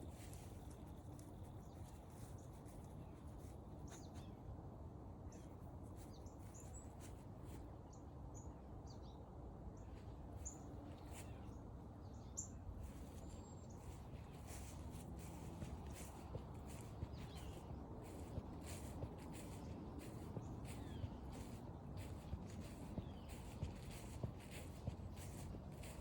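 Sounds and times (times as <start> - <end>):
small birds chirping: 0.0 - 4.4, 5.3 - 9.2, 9.8 - 26.0
low outdoor rumble: 9.8 - 26.0.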